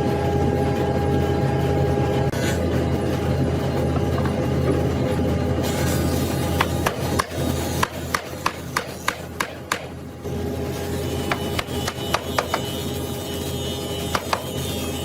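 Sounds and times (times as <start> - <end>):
hammer striking wood: 6.6 - 10.0, 11.3 - 12.7, 14.1 - 14.6.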